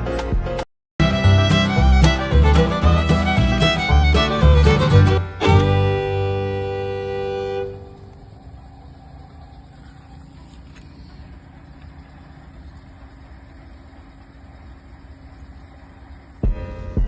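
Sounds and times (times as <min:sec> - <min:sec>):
held horn-like tone: 0:01.0 - 0:08.4
low steady hum: 0:01.1 - 0:17.0.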